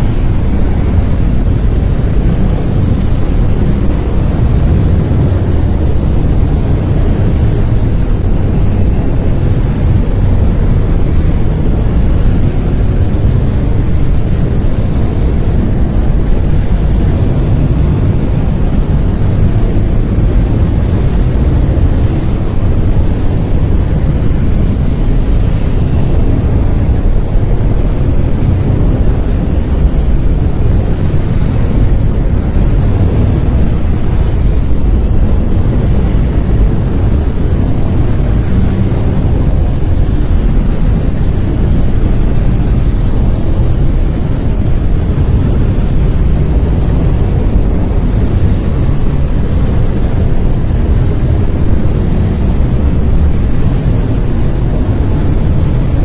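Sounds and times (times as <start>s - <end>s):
brown noise: 0.0s - 56.0s.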